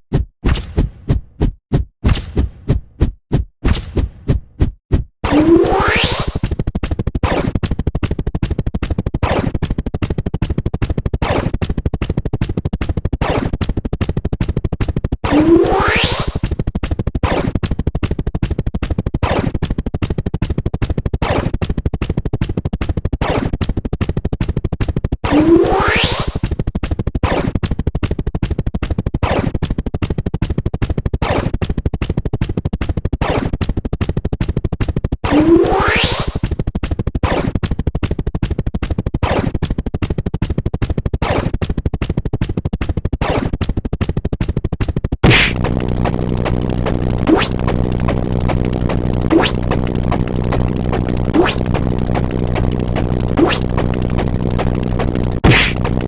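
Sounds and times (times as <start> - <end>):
short falling sweep: 5.2 - 6.5, 15.2 - 16.5, 45.2 - 56.0
rapid clicks: 5.3 - 56.0.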